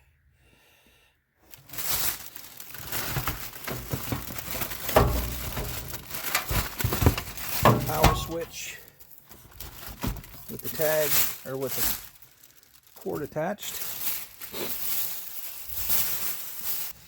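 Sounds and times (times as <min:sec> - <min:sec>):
packing material crinkling: 0:01.5 - 0:17.0
heavy thump: 0:03.6 - 0:08.6.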